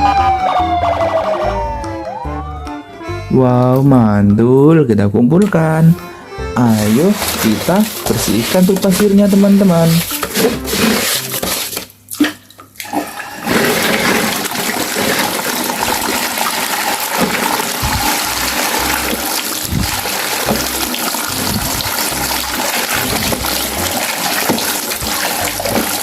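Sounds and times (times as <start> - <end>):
running water rushing: 6.7 - 11.8, 12.8 - 26.0.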